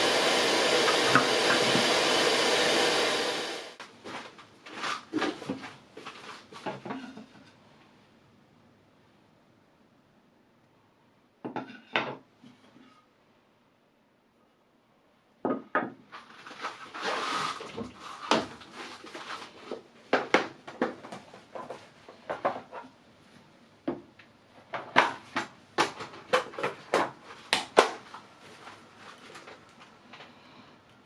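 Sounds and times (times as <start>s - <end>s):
scraping rustle: 4.0s - 7.5s, 16.1s - 19.8s.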